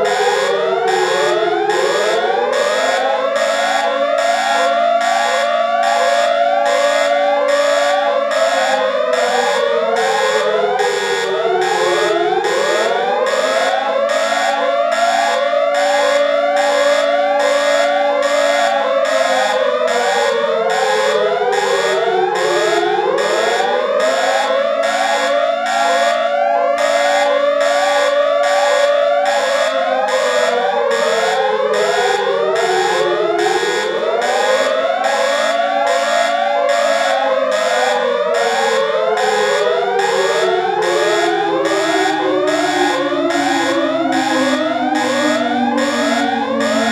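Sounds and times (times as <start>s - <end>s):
high pulsing beeps: 0.0s - 2.4s, 30.9s - 34.8s, 38.3s - 46.9s
siren-like alarm wail: 0.0s - 46.9s.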